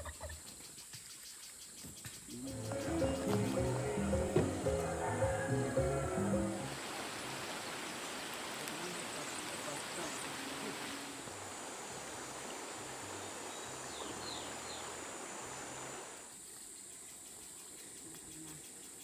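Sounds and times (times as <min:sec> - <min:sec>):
high insect drone: 0:00.4 - 0:19.0
rushing stream-like noise: 0:02.7 - 0:16.4.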